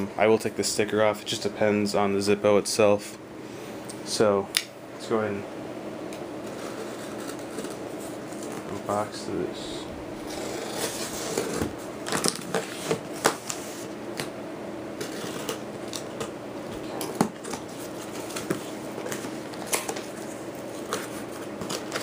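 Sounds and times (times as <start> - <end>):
steady low hum: 0.0 - 22.0
cardboard and paper rustling: 10.2 - 13.9, 15.0 - 22.0.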